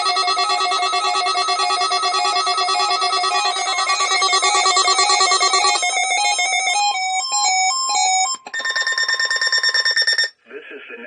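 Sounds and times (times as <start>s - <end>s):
beeping tones stepping pitch: 0.0s - 10.3s
pulsing alarm tone: 0.0s - 10.3s.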